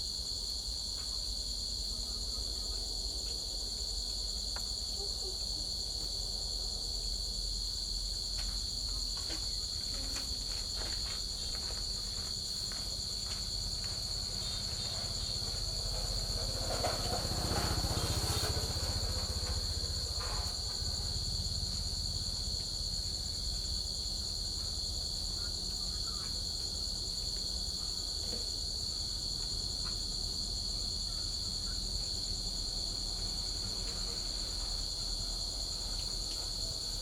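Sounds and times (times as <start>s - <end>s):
crickets trilling: 0.0s - 37.0s.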